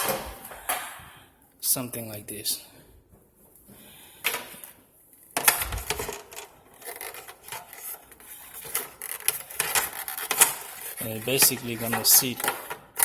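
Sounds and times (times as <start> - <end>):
plastic cover clicking and rattling: 5.4 - 13.0.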